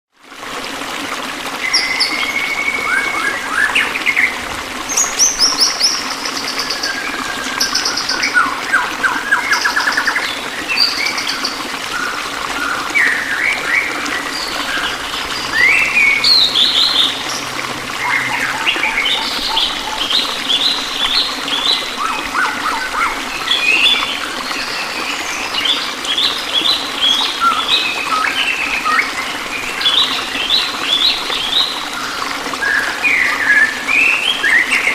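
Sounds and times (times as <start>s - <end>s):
songbirds chirping and trilling: 12.7s - 25.2s.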